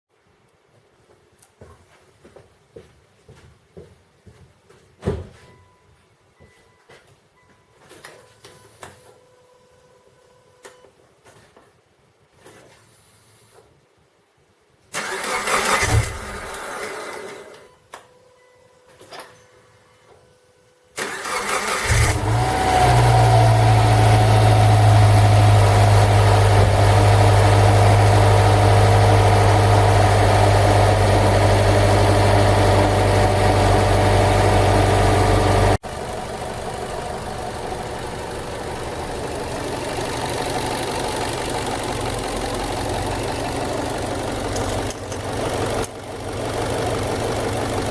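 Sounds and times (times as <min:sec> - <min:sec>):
car engine cranking and idling: 0:15.0 - 0:17.5, 0:21.0 - 0:47.9.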